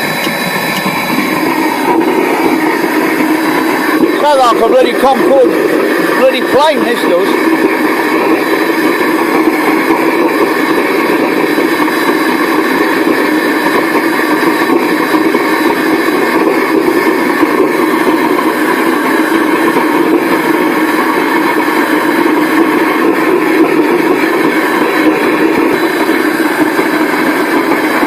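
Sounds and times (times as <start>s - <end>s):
furnace burner roaring: 0.0s - 28.0s.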